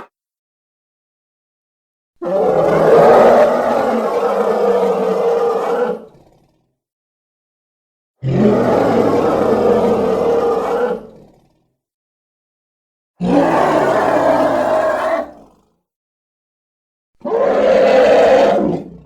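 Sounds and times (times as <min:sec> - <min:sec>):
creature roaring: 0:02.2 - 0:06.2, 0:08.2 - 0:11.3, 0:13.2 - 0:15.6, 0:17.2 - 0:19.0.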